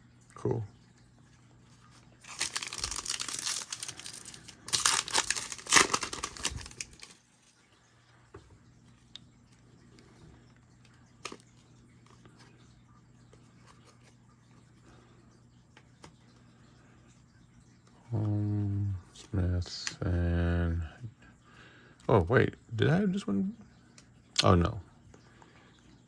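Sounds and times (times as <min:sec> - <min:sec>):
cards being handled: 0:02.2 - 0:07.2
foil wrapper tearing and crinkling: 0:02.2 - 0:07.2.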